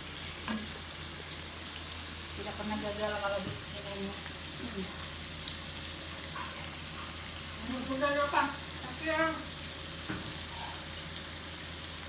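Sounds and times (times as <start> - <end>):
food sizzling in a pan: 0.0 - 12.0.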